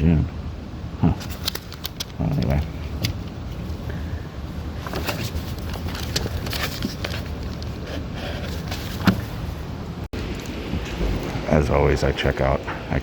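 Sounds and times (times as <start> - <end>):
rustles: 1.1 - 9.7.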